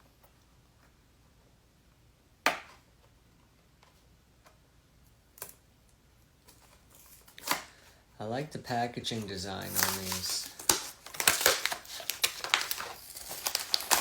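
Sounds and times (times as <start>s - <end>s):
fiddling with toy packaging: 9.0s - 14.0s
packaging crackle: 9.6s - 14.0s.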